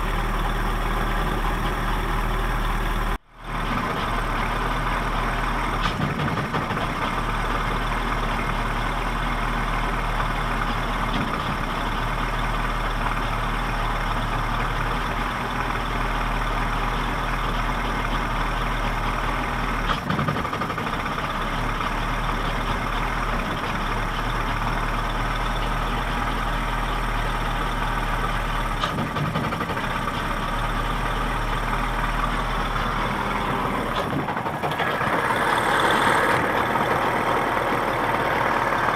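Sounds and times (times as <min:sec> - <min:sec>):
outboard motor idling roughly: 0:19.5 - 0:26.9, 0:27.8 - 0:38.9.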